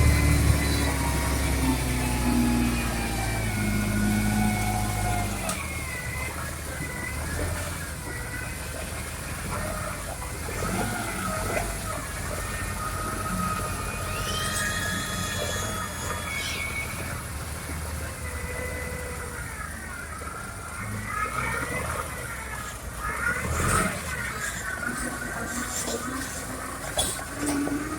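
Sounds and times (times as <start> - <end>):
metallic squeals: 0.0 - 6.5
machinery engine hum: 0.0 - 27.9.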